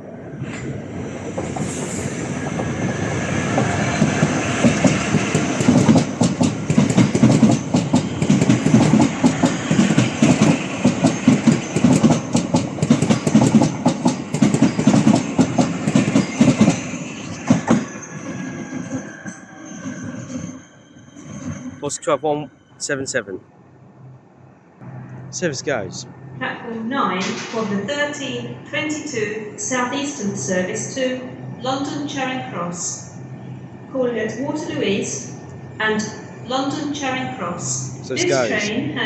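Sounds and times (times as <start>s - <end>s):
train rumbling: 0.0s - 23.4s, 24.8s - 39.0s
train wheels clattering over rail joints: 3.6s - 17.9s.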